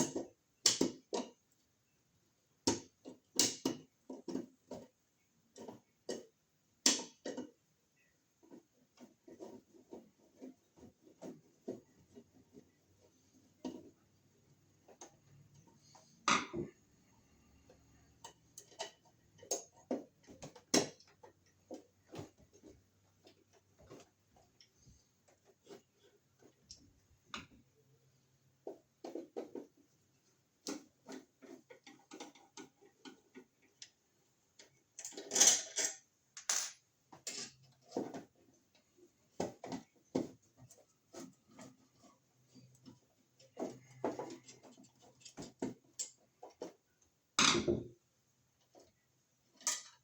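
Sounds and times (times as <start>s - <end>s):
hand tools clicking and tapping: 0.0s - 1.5s, 17.6s - 27.7s, 28.5s - 47.8s.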